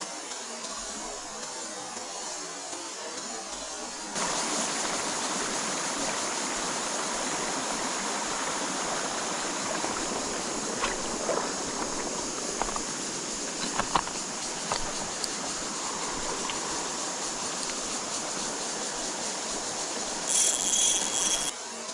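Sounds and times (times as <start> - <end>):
stream rushing over rocks: 3.8 - 21.0
small clicks: 20.3 - 21.5.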